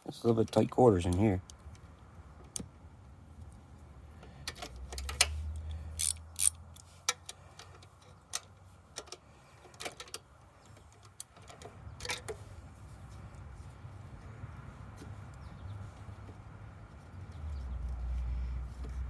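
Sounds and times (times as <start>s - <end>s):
socket ratchet clicking: 4.4s - 7.7s
hand tools clicking and clinking: 4.4s - 12.4s.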